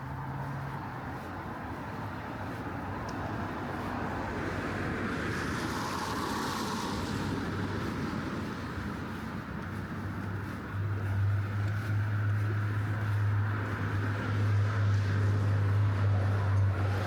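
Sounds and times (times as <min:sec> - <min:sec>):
car tyres hissing on wet road: 0:03.9 - 0:09.4.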